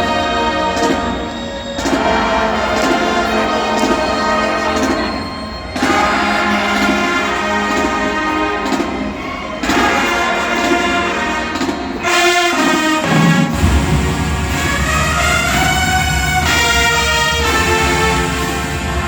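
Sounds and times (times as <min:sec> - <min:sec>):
marching band playing: 0:00.0 - 0:19.0
deep low brass: 0:12.0 - 0:19.0.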